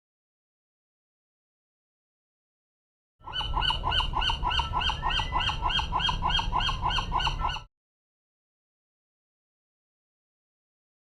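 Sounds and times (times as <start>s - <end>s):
low background rumble: 3.4s - 7.7s.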